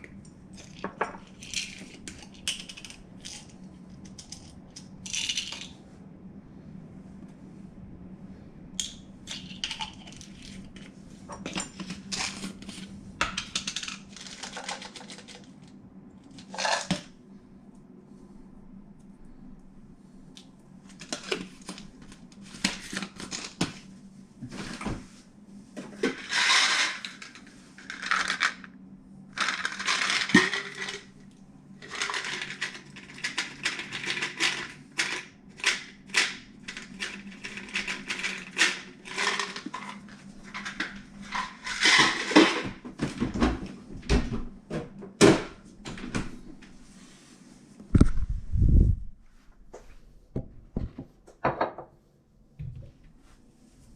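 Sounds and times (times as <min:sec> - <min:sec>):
items clicking and clattering: 0:00.1 - 0:05.8, 0:08.8 - 0:17.1, 0:20.9 - 0:23.8, 0:25.8 - 0:28.7, 0:29.4 - 0:31.1, 0:31.8 - 0:46.2.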